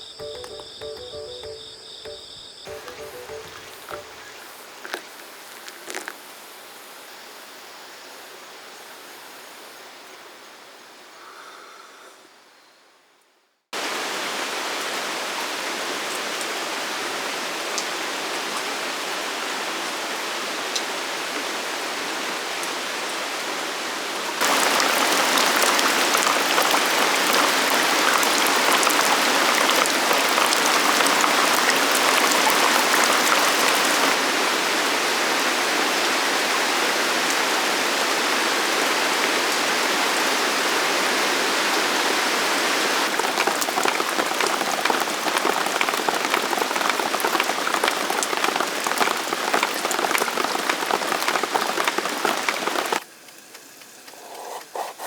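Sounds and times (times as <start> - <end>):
drops ticking: 0.0 - 5.0, 43.1 - 53.0
steady rain: 2.7 - 11.1, 13.8 - 54.8.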